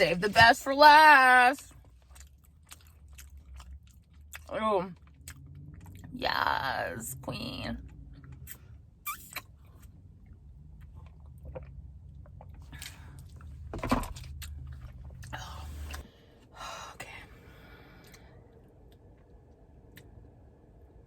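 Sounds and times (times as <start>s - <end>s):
low steady hum: 0.0s - 21.0s
chewing and mouth noises: 1.5s - 6.2s, 7.8s - 13.6s, 14.2s - 16.1s.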